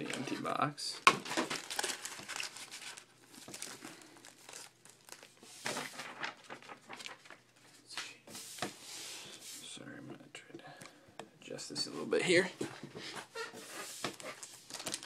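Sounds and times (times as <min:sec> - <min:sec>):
wrappers crinkling and tearing: 0:01.0 - 0:07.4, 0:14.2 - 0:15.0.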